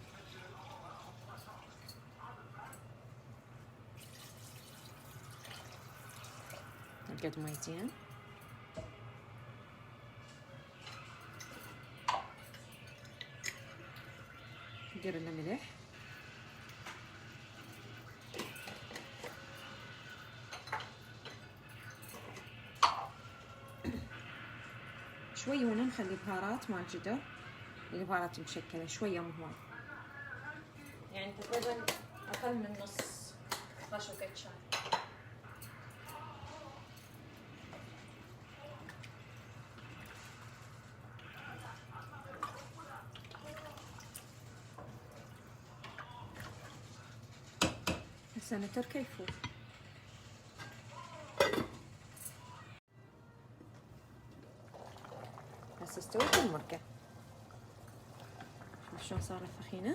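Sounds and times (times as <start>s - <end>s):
utensils clinking on cookware: 7.1s - 8.2s, 10.8s - 14.0s, 17.6s - 24.0s, 30.8s - 37.9s, 47.6s - 49.9s, 50.5s - 52.5s, 55.8s - 56.8s
stew bubbling in a pot: 37.5s - 51.8s, 53.7s - 59.9s.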